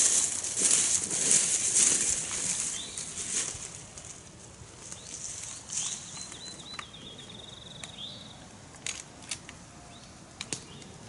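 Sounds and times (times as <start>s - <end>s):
brush and leaves rustling: 0.0s - 7.0s
songbird singing: 0.0s - 8.7s, 9.6s - 11.0s.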